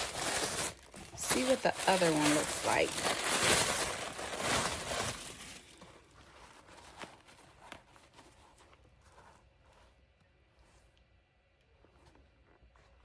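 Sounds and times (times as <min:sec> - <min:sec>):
packaging rustling and crinkling: 0:00.0 - 0:10.0.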